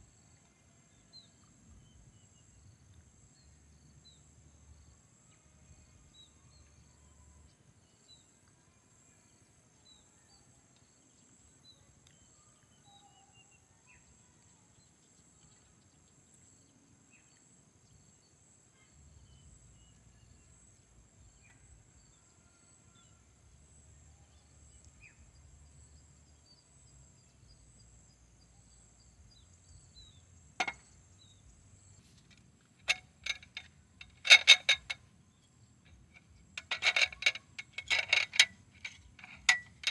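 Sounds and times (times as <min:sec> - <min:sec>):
sharp clicks or knocks: 0:30.6 - 0:30.8, 0:32.9 - 0:35.0.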